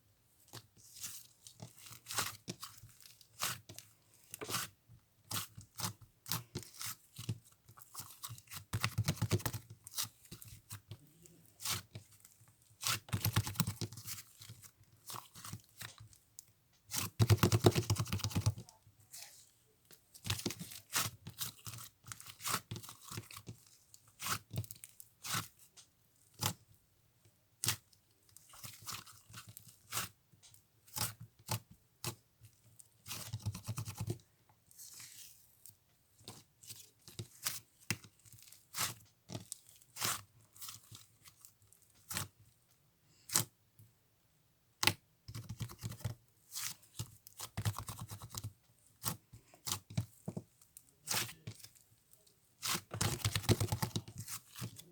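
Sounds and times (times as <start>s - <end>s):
slime squishing: 46.5s - 54.9s.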